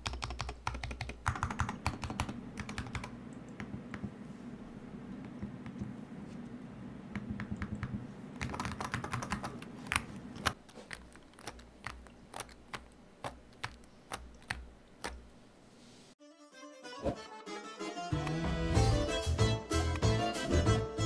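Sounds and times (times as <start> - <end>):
keyboard typing: 0.0 - 4.1, 7.1 - 15.2.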